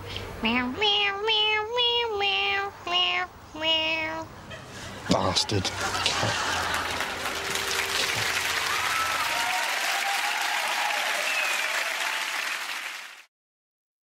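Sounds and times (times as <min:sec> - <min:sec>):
voices calling out: 0:04.4 - 0:11.5
audience applause: 0:05.8 - 0:13.3.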